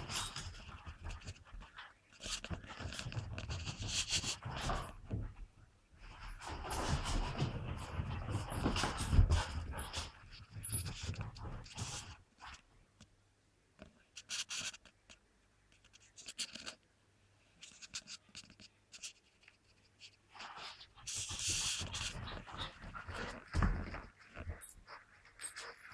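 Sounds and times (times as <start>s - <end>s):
puppy scuffling: 0.0s - 12.6s, 20.3s - 25.9s.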